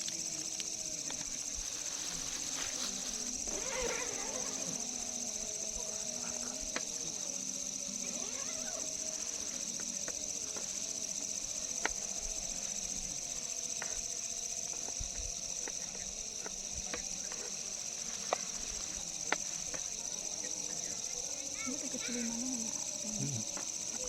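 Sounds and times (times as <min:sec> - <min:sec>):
crickets chirping: 0:00.0 - 0:24.0.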